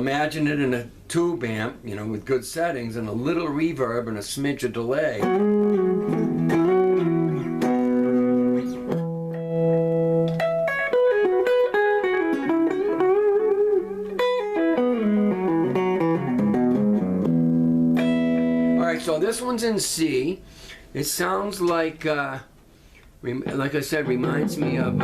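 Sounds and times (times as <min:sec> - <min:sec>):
clean electric guitar playing: 0:05.2 - 0:19.2, 0:23.4 - 0:25.0.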